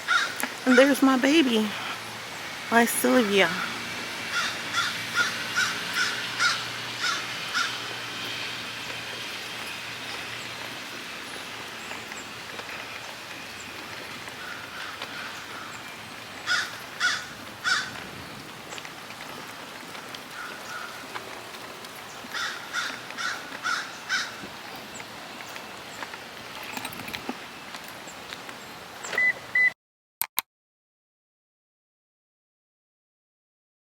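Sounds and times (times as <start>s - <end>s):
outdoor background noise: 0.0s - 29.8s
crow cawing: 0.1s - 0.8s, 3.6s - 7.9s, 14.4s - 15.9s, 16.5s - 18.0s, 20.3s - 21.1s, 22.3s - 24.4s.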